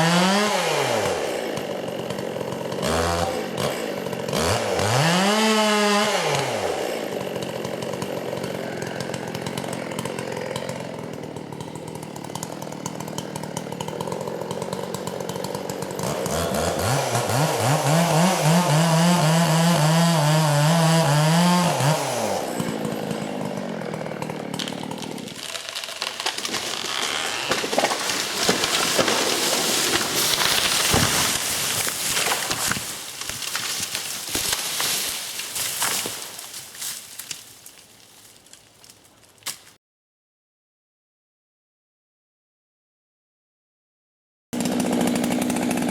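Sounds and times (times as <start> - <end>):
chainsaw engine revving and idling: 0.0 - 36.6, 44.6 - 45.9
loud cracking and crackling: 24.5 - 39.7.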